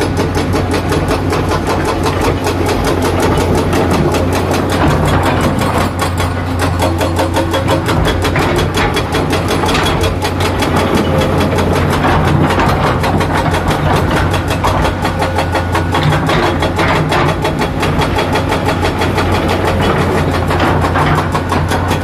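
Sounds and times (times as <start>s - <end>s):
diesel engine running steadily: 0.0s - 22.0s.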